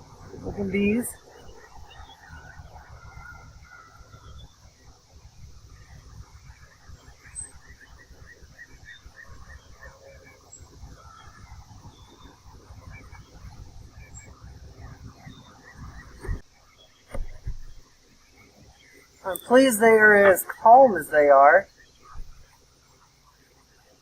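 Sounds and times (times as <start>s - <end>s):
steady low rumble: 0.0s - 16.4s
short thumps: 17.1s - 17.7s.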